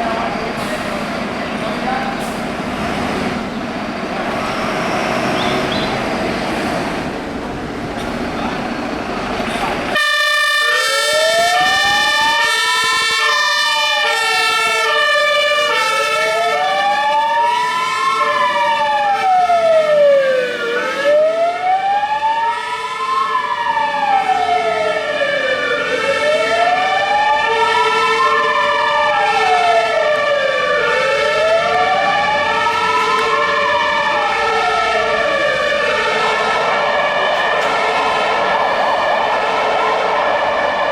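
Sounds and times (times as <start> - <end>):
wailing siren: 9.9 - 40.9
two-tone siren: 10.0 - 40.9.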